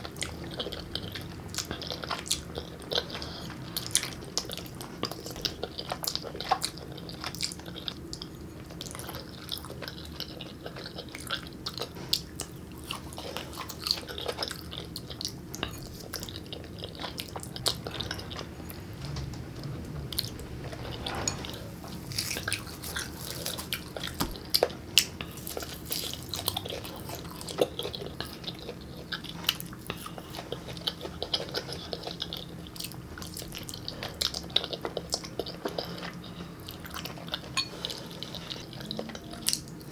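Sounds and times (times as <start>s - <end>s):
person chewing noodles: 0.0s - 20.4s, 22.0s - 39.9s.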